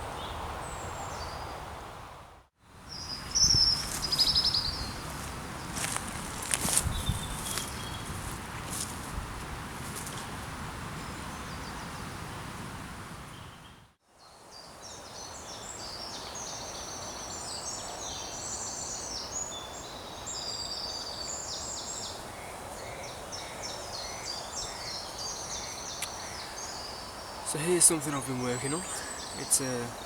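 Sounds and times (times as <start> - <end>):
songbirds singing: 2.8 - 8.9, 13.3 - 30.0.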